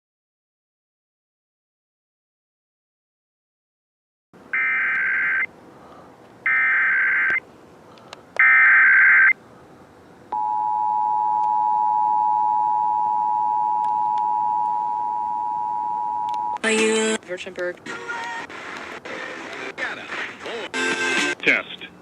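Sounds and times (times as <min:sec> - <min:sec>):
high data tone bursts: 0:04.6 - 0:05.5, 0:06.5 - 0:07.4.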